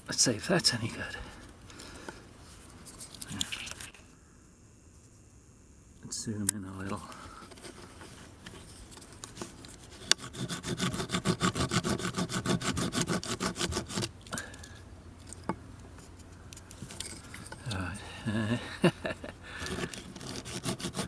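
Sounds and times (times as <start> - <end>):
metal rasp scraping wood: 9.4 - 14.2, 19.6 - 21.0.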